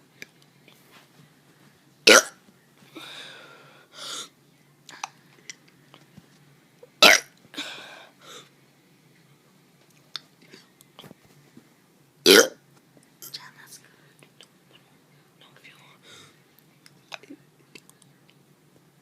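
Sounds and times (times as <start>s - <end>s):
child burping: 2.1s - 2.4s, 7.0s - 7.3s, 12.3s - 12.6s.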